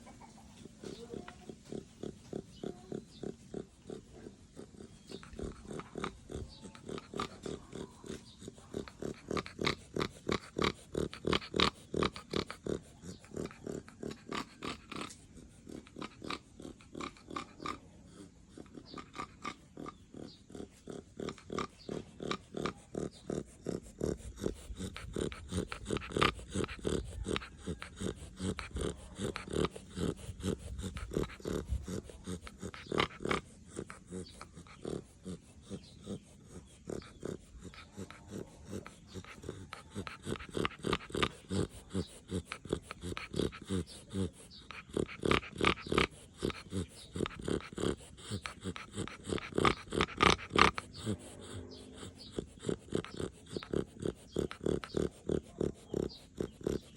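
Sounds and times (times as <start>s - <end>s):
dog snoring: 0.6s - 56.9s.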